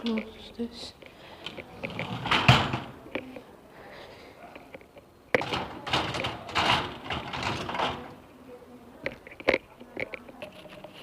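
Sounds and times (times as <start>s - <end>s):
scraping handling noise: 1.0s - 3.4s.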